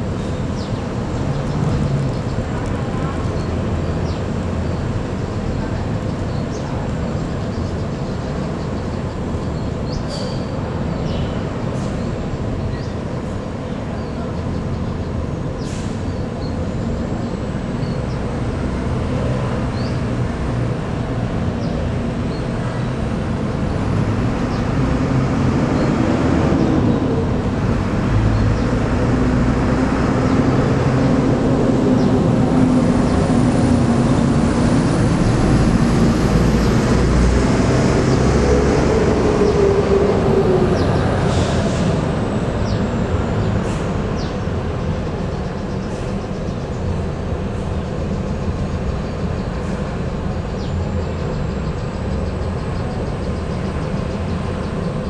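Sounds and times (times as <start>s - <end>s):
diesel bus engine running: 0.0s - 55.0s.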